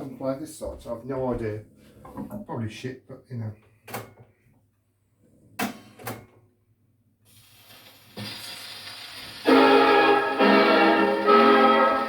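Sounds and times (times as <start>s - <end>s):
gramophone needle hiss: 7.5s - 12.0s.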